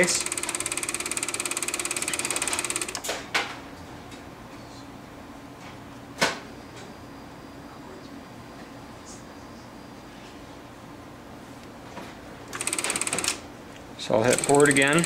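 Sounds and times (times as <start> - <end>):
projector mechanism chattering: 0.0 - 3.0, 12.6 - 13.4, 14.2 - 15.0.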